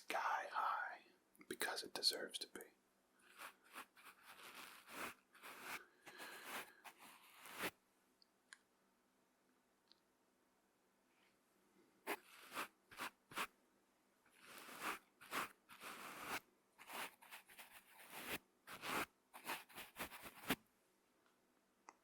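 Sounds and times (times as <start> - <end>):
brush bristles scratching microphone: 3.3 - 7.7, 12.1 - 13.5, 14.4 - 20.6.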